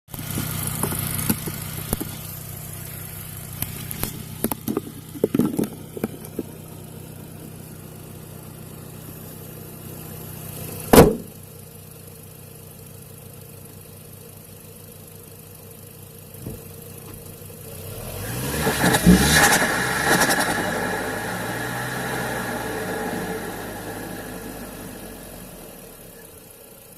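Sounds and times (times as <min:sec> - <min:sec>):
car engine idling: 0:00.1 - 0:18.2, 0:19.6 - 0:26.9
loud thump: 0:10.9 - 0:11.4, 0:16.4 - 0:17.2.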